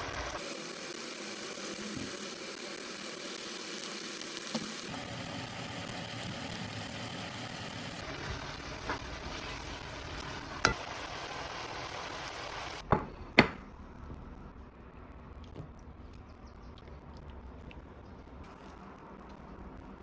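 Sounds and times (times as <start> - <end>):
food sizzling in a frying pan: 0.0 - 12.8
utensil knocking against pan: 12.8 - 13.6.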